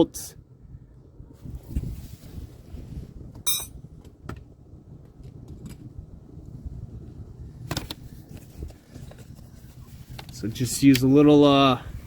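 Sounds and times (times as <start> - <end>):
low steady rumble: 0.3 - 12.0
metal tools clinking: 3.5 - 3.8.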